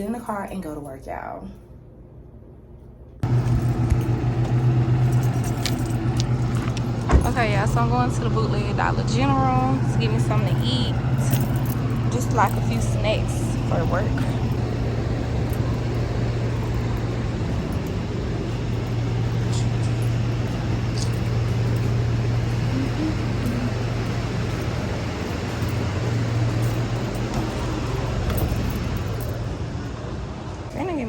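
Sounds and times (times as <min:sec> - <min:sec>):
road and engine drone inside car: 0:03.2 - 0:31.0.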